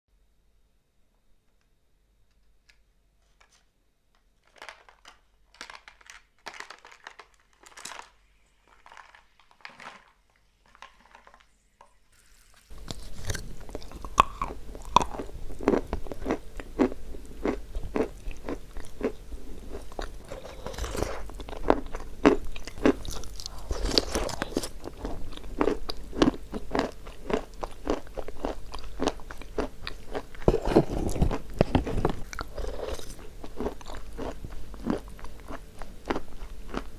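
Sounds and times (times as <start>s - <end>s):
person chewing chalk: 12.5s - 36.9s.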